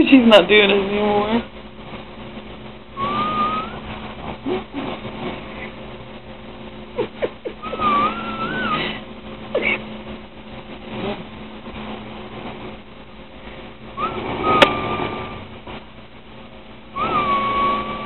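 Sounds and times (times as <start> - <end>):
steady low hum: 0.0 - 18.0
woman whistling in her sleep: 3.0 - 3.9, 7.6 - 9.0, 14.0 - 15.5, 17.0 - 18.0.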